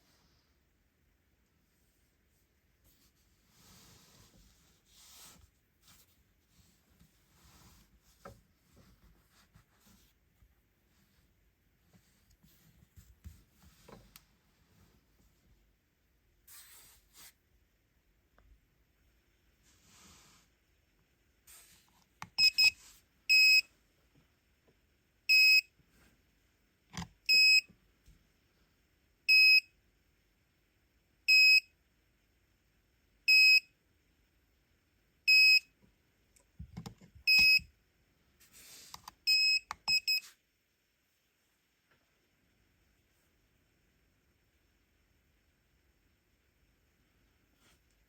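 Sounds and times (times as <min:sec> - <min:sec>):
faint clicks and handling noise: 0:11.8 - 0:14.5, 0:38.9 - 0:40.2.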